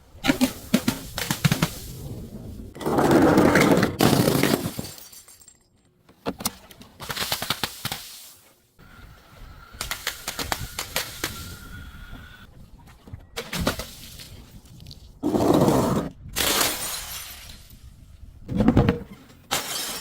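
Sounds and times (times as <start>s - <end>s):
glass bottle shattering: 19.5s - 20.0s.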